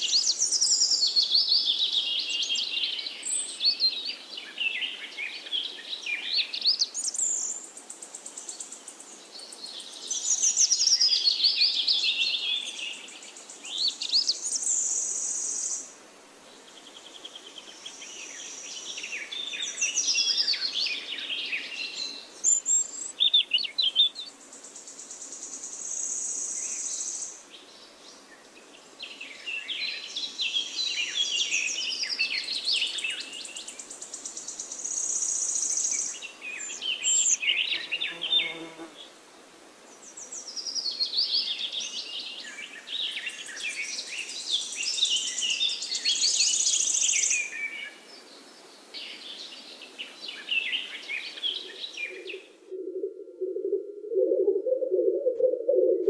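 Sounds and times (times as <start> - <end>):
songbirds chirping: 0.0 - 56.0.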